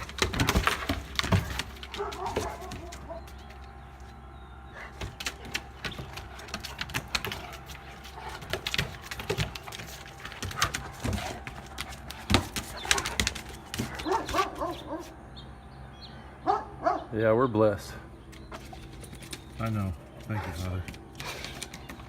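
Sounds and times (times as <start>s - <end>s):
dog paws and claws clattering: 0.0s - 4.1s, 4.8s - 15.1s, 18.3s - 22.0s.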